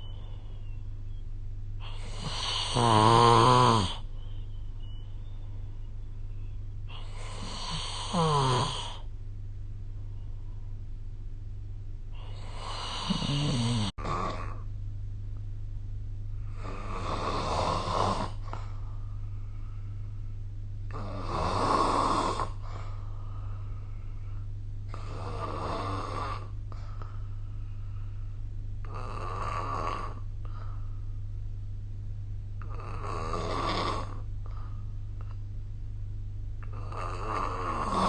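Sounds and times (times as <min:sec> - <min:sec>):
steady low hum: 0:00.0 - 0:38.0
person snoring: 0:01.8 - 0:04.1, 0:06.9 - 0:09.1, 0:12.2 - 0:14.7, 0:16.4 - 0:18.6, 0:20.9 - 0:22.6, 0:24.9 - 0:26.6, 0:28.8 - 0:30.8, 0:32.6 - 0:34.3, 0:36.6 - 0:38.0.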